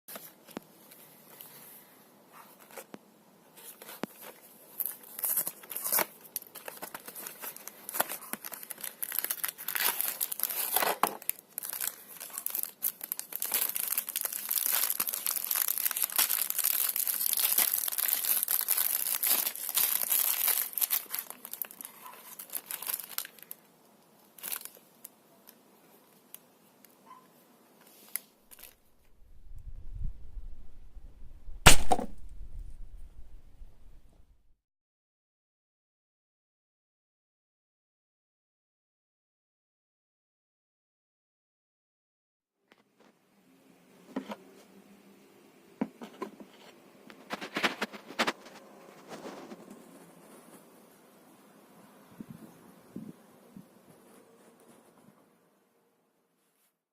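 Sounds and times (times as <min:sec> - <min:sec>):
plastic wrapper crinkling: 0:03.6 - 0:26.4, 0:27.8 - 0:28.9.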